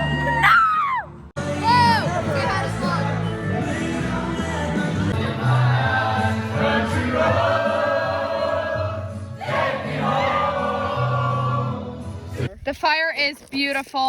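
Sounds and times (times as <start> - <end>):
bass line: 0.0 - 7.6
choral singing: 1.4 - 12.3.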